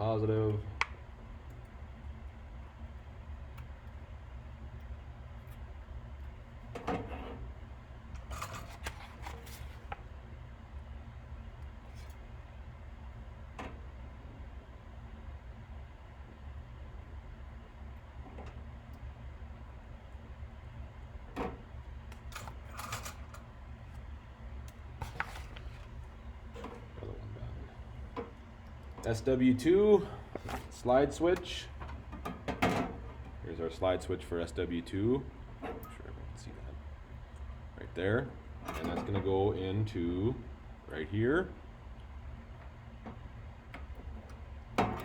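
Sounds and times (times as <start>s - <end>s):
steady low hum: 0.0s - 45.0s
clicks and scraping rustles: 8.2s - 10.0s, 25.0s - 26.9s.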